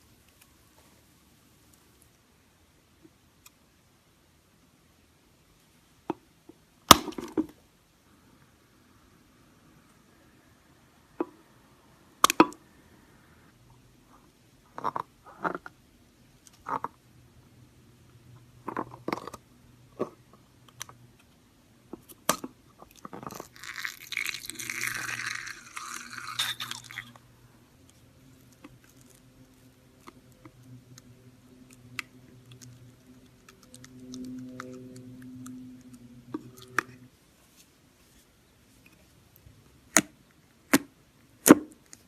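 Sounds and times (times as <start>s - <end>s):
slime crackling and popping: 22.2s - 27.2s.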